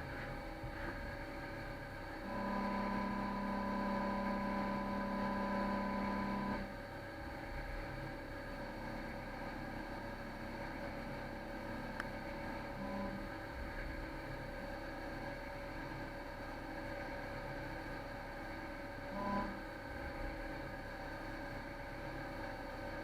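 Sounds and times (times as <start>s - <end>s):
lathe machine hum: 0.0s - 23.0s
steady machine whine: 0.0s - 23.0s.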